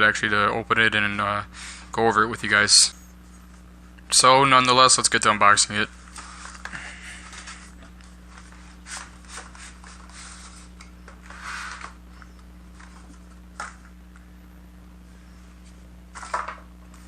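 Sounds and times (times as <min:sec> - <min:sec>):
low electrical hum: 0:00.0 - 0:17.0
cardboard packaging rustling: 0:06.0 - 0:12.0.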